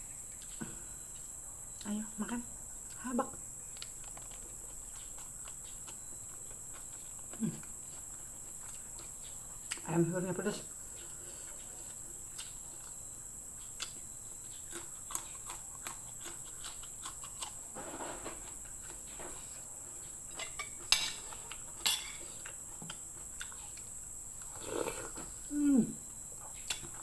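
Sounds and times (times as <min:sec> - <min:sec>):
insects chirring: 0:00.0 - 0:27.0
chewing: 0:03.6 - 0:09.9, 0:10.8 - 0:25.4, 0:26.4 - 0:27.0
cutlery clinking on a plate: 0:20.4 - 0:21.2, 0:21.8 - 0:22.2.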